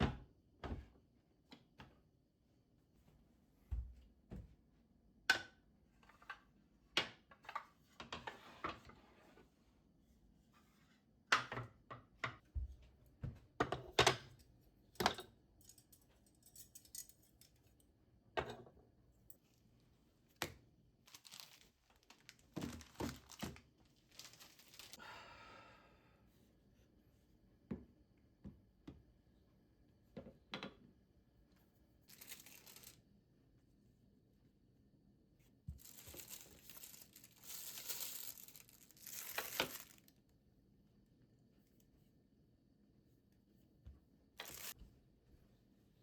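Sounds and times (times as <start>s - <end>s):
crinkling or tearing: 21.1s - 25.0s, 32.1s - 33.0s, 35.8s - 40.1s, 44.4s - 44.8s.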